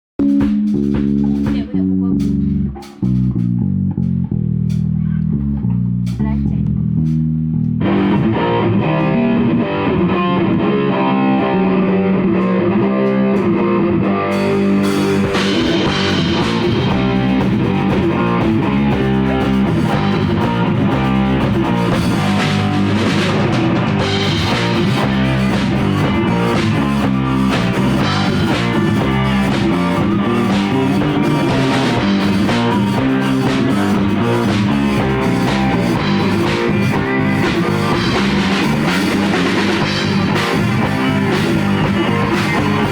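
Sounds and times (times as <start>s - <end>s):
drum kit and cymbals: 0.2s - 4.9s, 14.3s - 42.9s
rock band playing: 0.2s - 4.9s, 7.0s - 42.9s.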